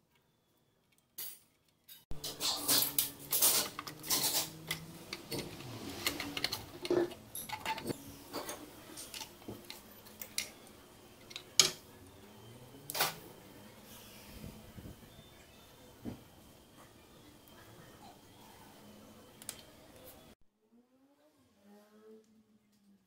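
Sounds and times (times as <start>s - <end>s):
metal tools clinking and clattering: 1.2s - 10.6s.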